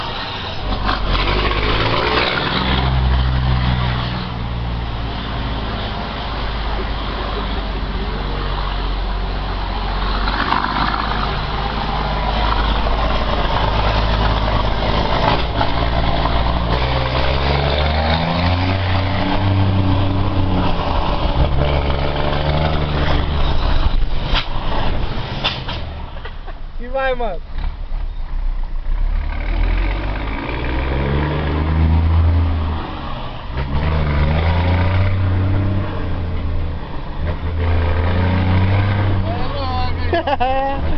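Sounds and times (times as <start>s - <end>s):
truck diesel engine revving: 0.0s - 25.9s, 28.8s - 40.9s.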